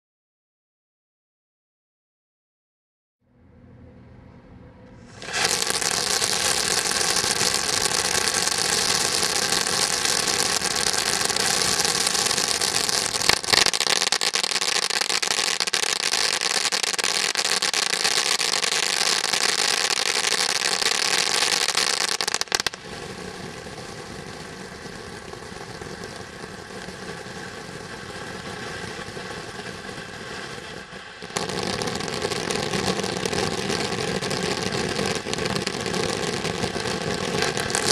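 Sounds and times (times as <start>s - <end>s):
firework fountain hissing and crackling: 5.0s - 37.9s
firework pop: 5.2s - 6.5s.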